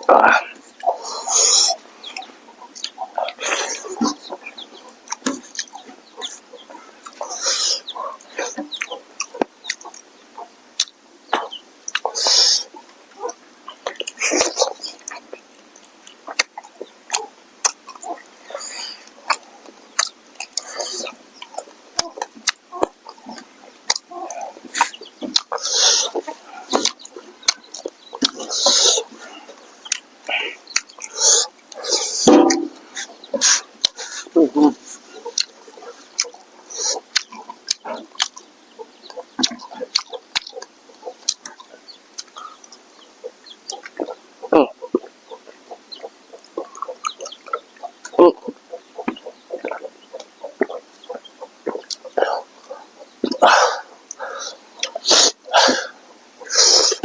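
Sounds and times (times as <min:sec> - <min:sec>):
chewing and lip-smacking: 0:05.1 - 0:05.8, 0:10.8 - 0:12.4, 0:13.2 - 0:34.2, 0:35.2 - 0:38.4, 0:39.0 - 0:43.0, 0:46.0 - 0:53.4, 0:54.1 - 0:55.7
person chewing and lip-smacking: 0:16.0 - 0:18.0, 0:19.3 - 0:20.6, 0:23.9 - 0:29.0, 0:35.3 - 0:35.6, 0:37.1 - 0:38.4.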